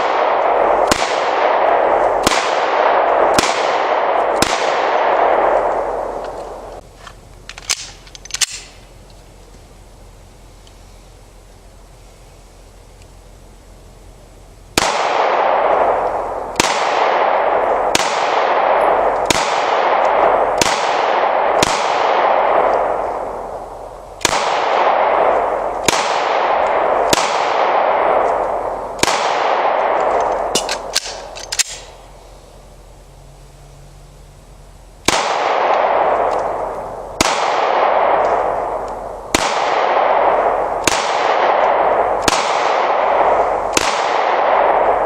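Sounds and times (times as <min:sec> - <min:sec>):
pistol shots echoing: 0:00.0 - 0:06.8, 0:14.8 - 0:31.9, 0:35.0 - 0:45.0.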